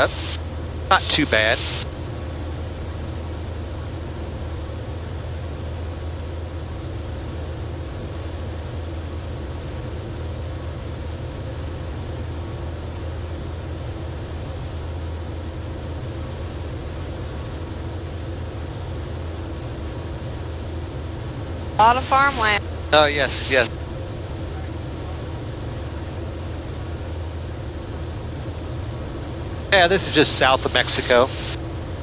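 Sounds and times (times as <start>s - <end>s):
rushing air noise: 0.0s - 1.8s, 29.2s - 32.0s
aircraft engine and propeller drone: 0.0s - 28.2s, 28.9s - 32.0s.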